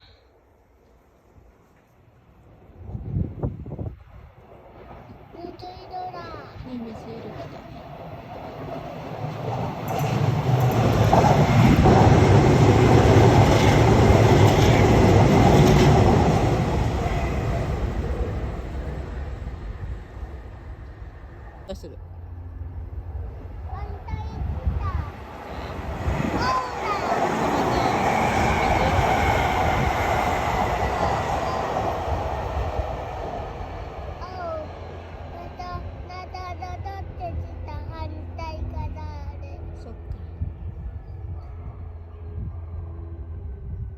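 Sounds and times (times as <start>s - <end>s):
electric train passing: 2.3s - 43.9s
wheels rumbling on rails: 2.4s - 43.9s.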